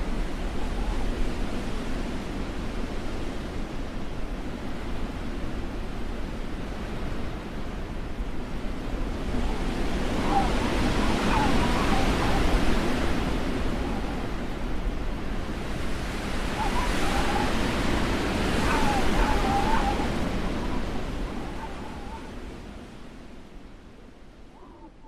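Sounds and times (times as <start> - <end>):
blizzard wind rumbling: 0.0 - 25.0
faint wavering whistles: 0.1 - 1.3, 9.2 - 14.8, 16.2 - 22.8.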